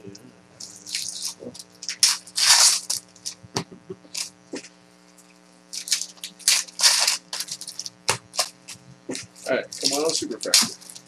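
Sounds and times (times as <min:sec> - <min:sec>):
faint low hum: 0:00.0 - 0:11.0
packaging crinkling and tearing: 0:00.6 - 0:03.5, 0:05.7 - 0:11.0.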